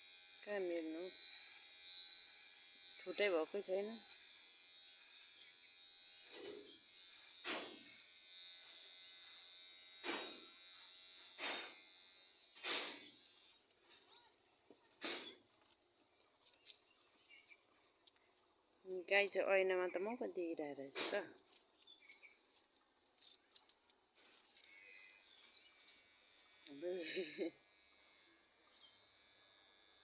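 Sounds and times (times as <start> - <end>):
electric hair clippers buzzing: 0.0 - 14.1, 21.0 - 30.0.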